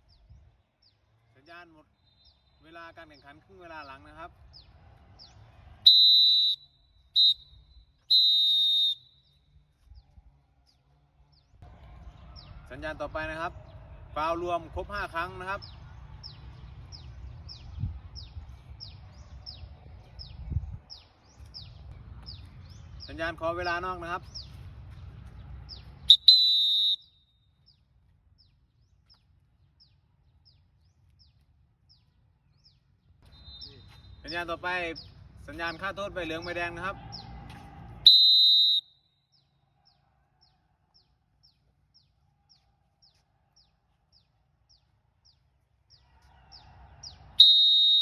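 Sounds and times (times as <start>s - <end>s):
referee's whistle blasts: 5.9s - 9.2s, 26.1s - 27.2s, 38.1s - 39.0s, 47.4s - 48.0s.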